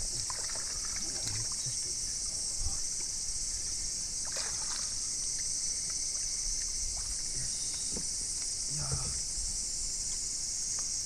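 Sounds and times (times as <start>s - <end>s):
small water splashes: 0.0s - 1.9s, 4.2s - 7.8s
insects chorus: 0.0s - 11.0s.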